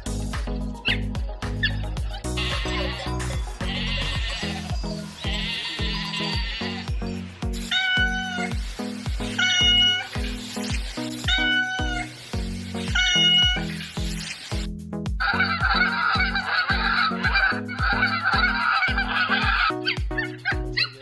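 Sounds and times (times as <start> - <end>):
background music with steady beat: 0.0 - 21.0
sheep bleating: 2.3 - 7.0, 7.7 - 8.6, 9.3 - 10.2, 11.3 - 12.2, 12.8 - 13.8, 15.4 - 19.7
cat meowing: 5.3 - 6.9, 11.3 - 12.1, 13.0 - 13.6.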